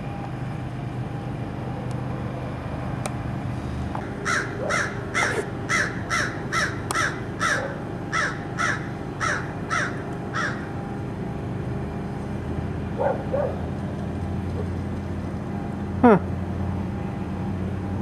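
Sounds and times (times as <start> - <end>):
low background hum: 0.0 - 18.0
bird harsh calls: 4.1 - 10.8.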